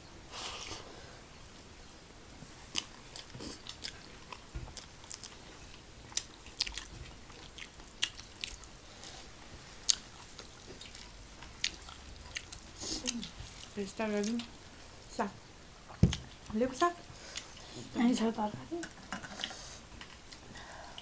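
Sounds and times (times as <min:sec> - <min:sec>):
chewing and biting: 0:02.7 - 0:14.5.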